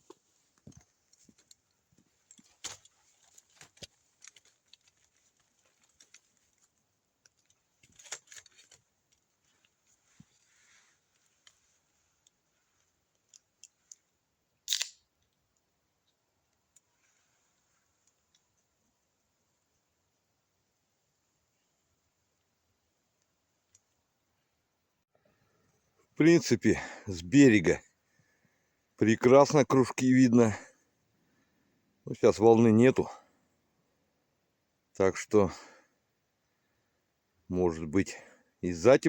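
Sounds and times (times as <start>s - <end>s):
soft rustles: 0.0s - 13.9s
faint clicks: 12.2s - 17.2s, 17.8s - 18.9s, 23.1s - 24.1s
sharp click: 14.7s - 15.0s.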